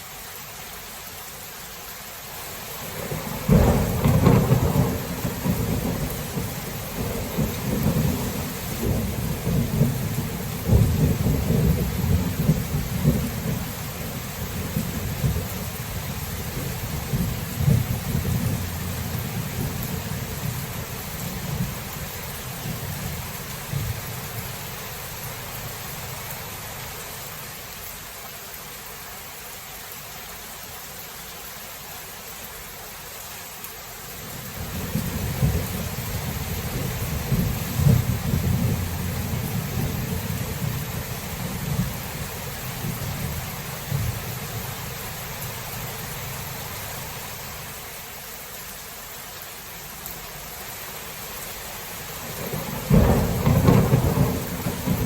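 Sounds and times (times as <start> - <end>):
steady rain: 0.0 - 55.0
low rumble of thunder: 2.9 - 26.0, 34.4 - 45.2, 52.2 - 55.0
thunderclap: 3.0 - 13.6, 16.6 - 21.9, 34.6 - 44.3, 52.4 - 55.0.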